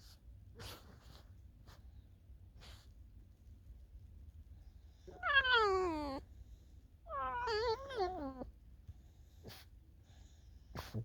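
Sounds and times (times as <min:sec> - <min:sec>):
fox whining: 0:05.1 - 0:06.3, 0:07.1 - 0:08.6.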